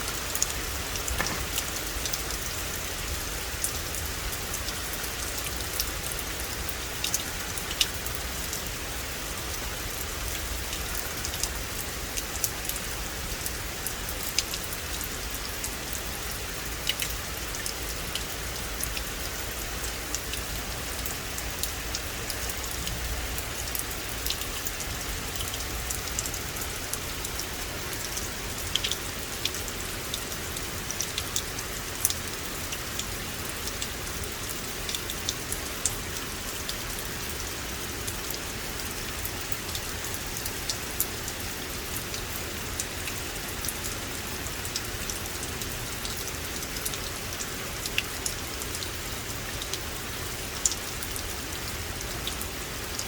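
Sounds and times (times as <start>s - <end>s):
rain hiss on forest: 0.0s - 53.0s.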